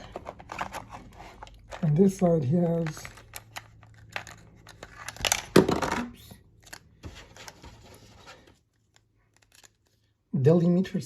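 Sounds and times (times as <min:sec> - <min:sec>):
plastic toys clattering: 0:00.0 - 0:07.2.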